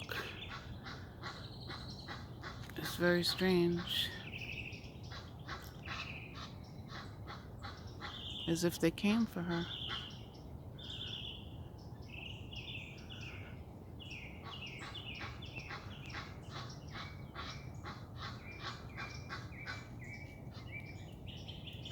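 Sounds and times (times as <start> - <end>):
geese honking: 0.1 - 4.3, 14.4 - 21.1.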